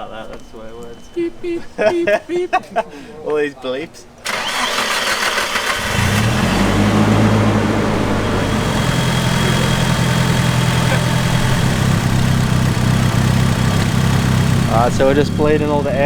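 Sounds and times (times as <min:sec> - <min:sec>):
car engine idling: 0:04.3 - 0:16.0.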